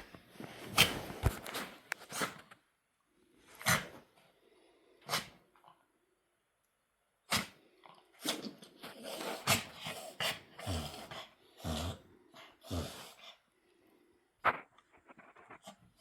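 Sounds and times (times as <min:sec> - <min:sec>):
dog sneezing and snorting: 0:02.0 - 0:02.4, 0:03.6 - 0:04.0, 0:05.1 - 0:05.4, 0:07.3 - 0:07.6, 0:08.2 - 0:11.1.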